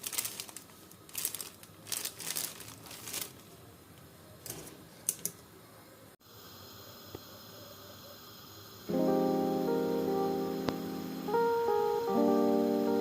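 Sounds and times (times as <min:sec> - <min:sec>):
rustling and crinkling: 0:00.0 - 0:03.6.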